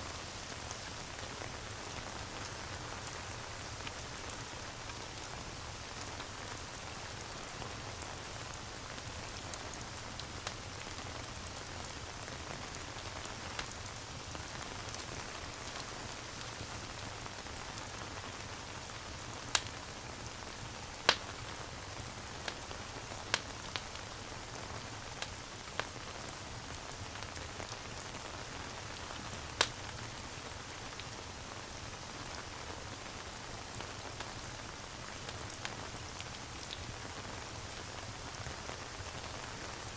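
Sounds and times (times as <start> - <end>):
rain falling: 0.0 - 39.9
wood fire crackling pops: 19.5 - 19.8, 21.1 - 21.4, 23.3 - 24.0, 29.5 - 30.0.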